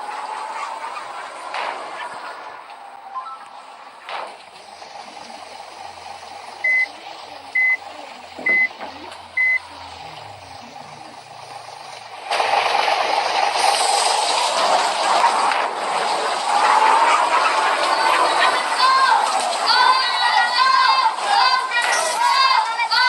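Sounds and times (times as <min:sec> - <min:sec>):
high electronic beeps: 0:03.1 - 0:03.5, 0:06.6 - 0:06.9, 0:07.5 - 0:07.8, 0:08.4 - 0:09.8
loud rushing hiss: 0:09.3 - 0:17.1.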